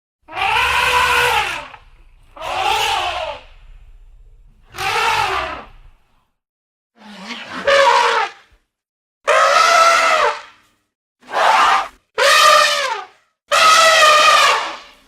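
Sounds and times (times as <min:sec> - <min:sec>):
creature calls: 0:00.3 - 0:03.7, 0:04.6 - 0:05.9
low rumble: 0:01.3 - 0:06.4.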